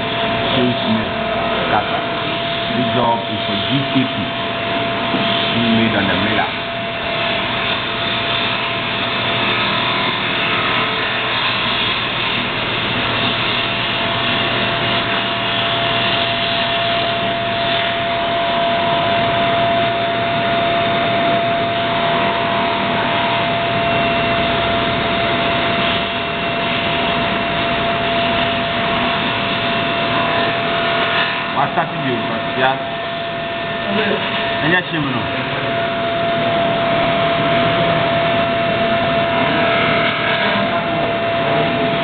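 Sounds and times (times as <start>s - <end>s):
milling machine cutting with whine: 0.0s - 42.0s.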